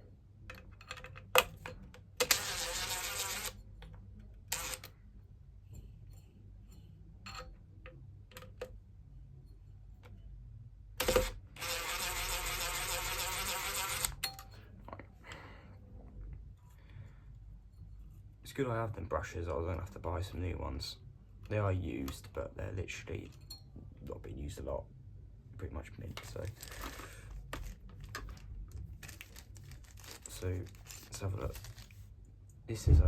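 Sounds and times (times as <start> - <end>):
tools clicking and knocking: 0.5 - 2.4, 7.2 - 8.8
cordless drill whining: 2.2 - 3.5, 11.0 - 14.2.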